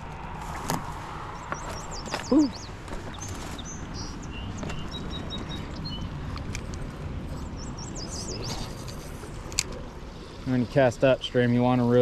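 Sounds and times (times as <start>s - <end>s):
small birds chirping: 1.3s - 9.5s.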